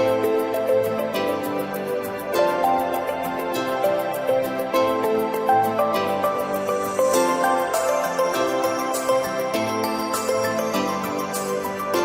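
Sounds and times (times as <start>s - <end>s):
gentle instrumental music with beat: 0.0s - 12.0s.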